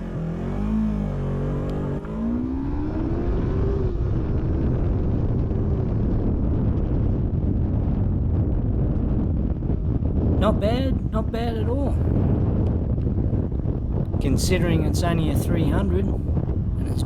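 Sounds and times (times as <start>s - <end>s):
motorcycle engine accelerating: 0.0s - 10.4s
wind roar on microphone: 0.0s - 17.0s.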